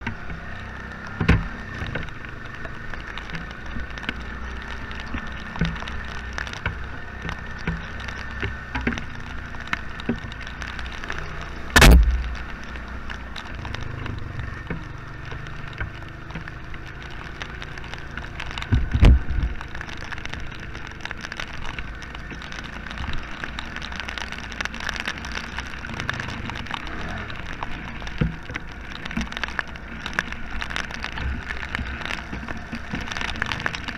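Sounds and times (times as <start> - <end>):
atv engine running: 0.0 - 33.9
rain hiss: 0.0 - 33.9
raindrop taps: 0.0 - 33.9
loud thumps: 11.8 - 12.8, 18.8 - 19.6.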